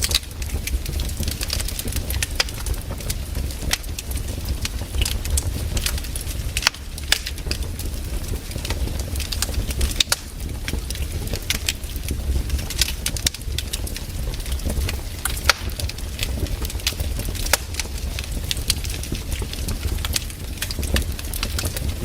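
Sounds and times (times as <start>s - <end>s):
campfire crackling and popping: 0.0s - 22.0s
low fire rumble: 0.0s - 22.0s.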